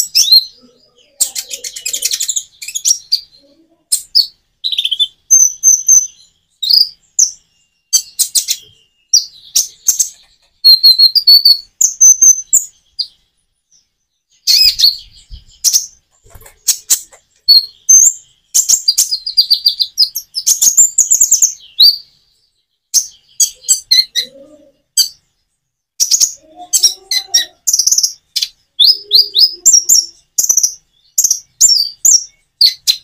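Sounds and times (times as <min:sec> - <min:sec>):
sunbird chirping and trilling: 0:00.0 - 0:33.0.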